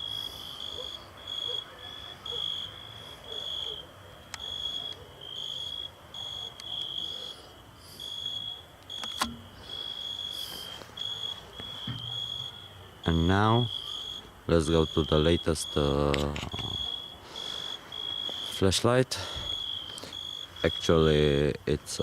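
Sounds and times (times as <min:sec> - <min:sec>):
crickets chirping: 0:00.0 - 0:22.0
sharp click: 0:08.9 - 0:09.5.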